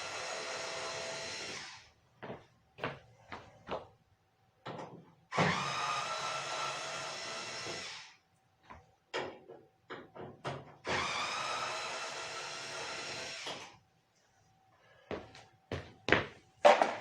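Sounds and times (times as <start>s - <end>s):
cordless drill motor whining: 0.0s - 1.9s, 5.4s - 8.2s, 10.9s - 13.7s.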